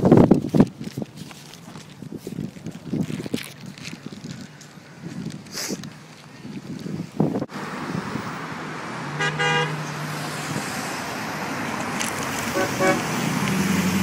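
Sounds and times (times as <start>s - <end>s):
road traffic noise: 0.0s - 14.0s
car horn honking: 9.1s - 9.9s, 12.5s - 13.1s.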